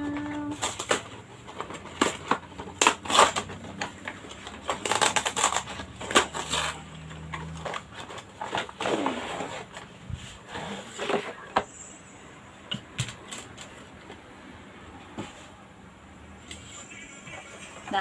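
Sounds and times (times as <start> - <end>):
packaging rustling and crinkling: 0.0 - 11.7.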